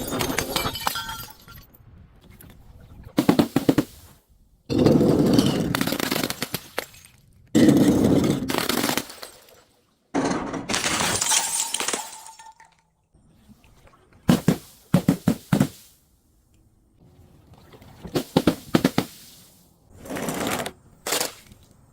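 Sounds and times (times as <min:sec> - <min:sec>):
glass bottles crushing and shattering: 0:00.0 - 0:01.7, 0:04.7 - 0:09.6, 0:10.2 - 0:12.8.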